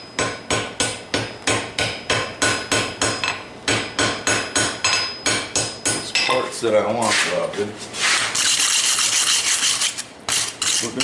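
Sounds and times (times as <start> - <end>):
hammer striking steel on anvil: 0.2 - 6.4.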